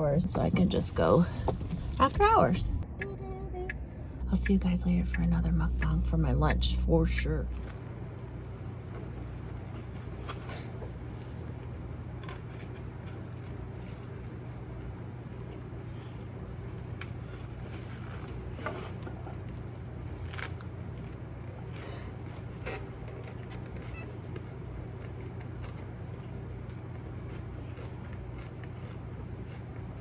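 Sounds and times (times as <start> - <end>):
car engine and road hum: 0.0 - 10.3.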